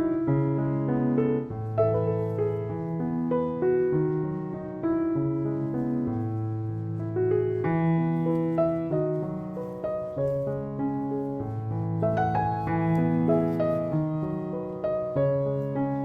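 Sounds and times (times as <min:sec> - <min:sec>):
gentle keyboard music: 0:00.0 - 0:16.0.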